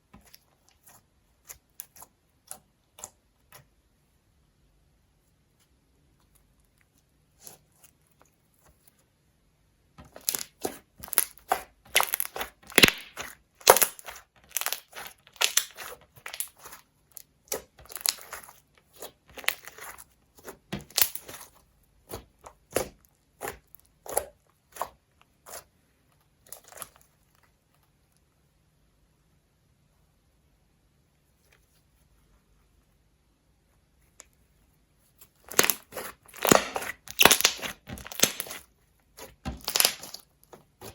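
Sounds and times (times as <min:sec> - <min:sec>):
slime crackling and popping: 0:10.0 - 0:25.6, 0:35.4 - 0:40.9.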